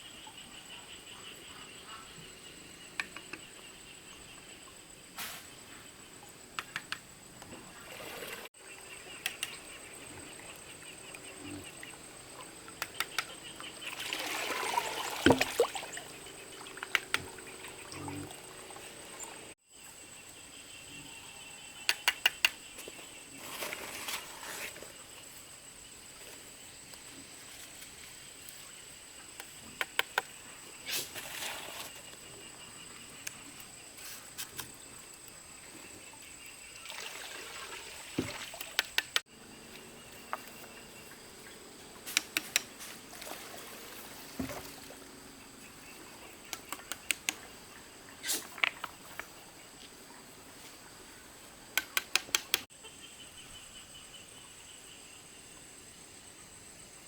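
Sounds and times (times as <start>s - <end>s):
insects chirping: 0.0s - 57.0s
sharp clicks and knocks: 42.1s - 42.8s, 51.8s - 52.7s.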